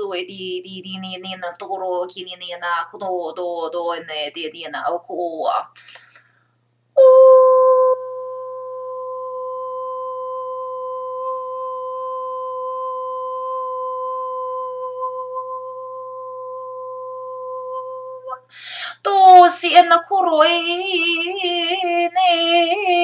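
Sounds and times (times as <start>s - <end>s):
woman humming a steady note: 7.0s - 18.5s.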